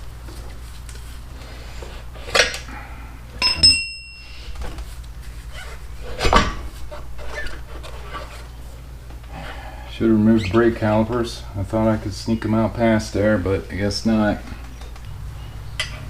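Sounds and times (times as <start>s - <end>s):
steady low hum: 0.0s - 16.0s
metal tools clanking: 3.4s - 4.3s.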